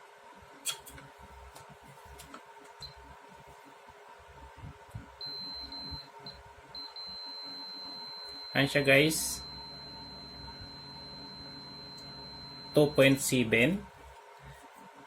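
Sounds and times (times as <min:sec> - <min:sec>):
meter beeper high tone: 0:06.8 - 0:13.4.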